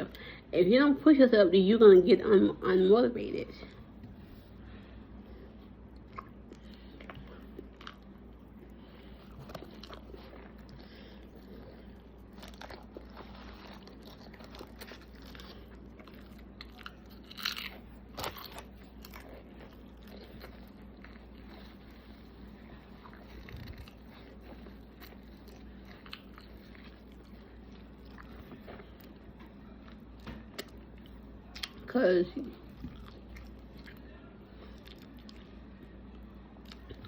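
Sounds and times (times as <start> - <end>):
person chewing food: 3.7 - 37.0
crunchy bites: 12.2 - 21.4.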